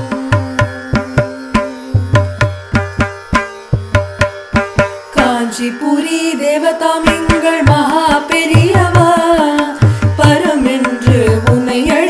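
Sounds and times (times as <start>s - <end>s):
drum rhythm: 7.3s - 11.6s.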